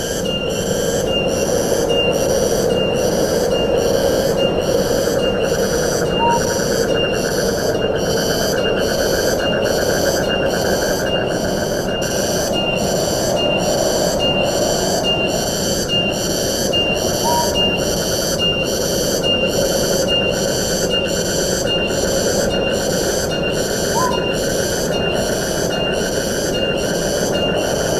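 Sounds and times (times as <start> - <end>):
pulsing insect chorus: 0.0 - 27.9
wind in trees: 0.0 - 27.9.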